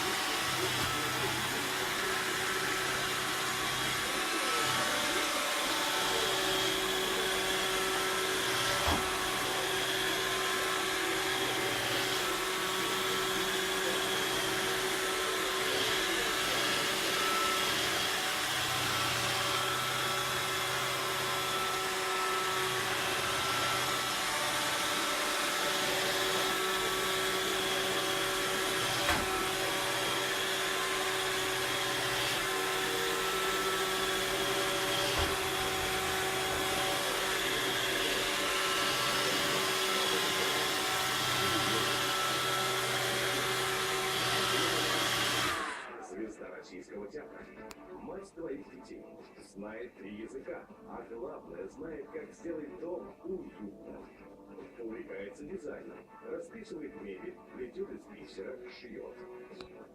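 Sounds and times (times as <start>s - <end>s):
robot vacuum cleaner humming: 0.0s - 46.0s.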